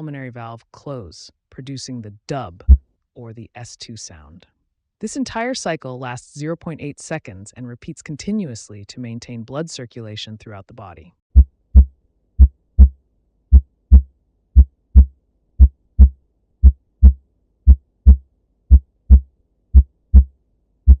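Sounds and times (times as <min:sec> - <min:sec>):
heartbeat thumps: 0:11.4 - 0:20.3.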